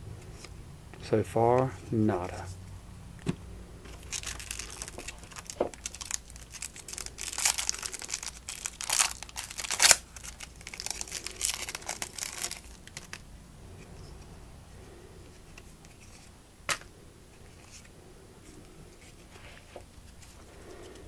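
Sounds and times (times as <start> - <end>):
card pack wrappers crinkling: 3.9 - 13.2.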